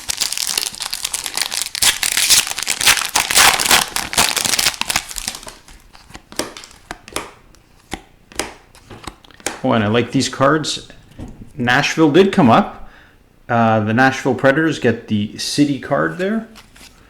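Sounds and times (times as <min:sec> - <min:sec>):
foil wrapper tearing and crinkling: 0:00.0 - 0:06.7.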